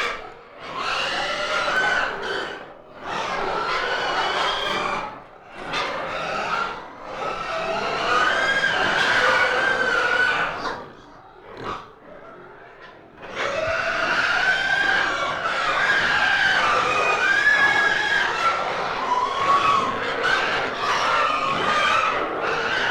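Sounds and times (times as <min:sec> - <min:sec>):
piglets squealing: 0:00.7 - 0:05.0, 0:13.4 - 0:22.9.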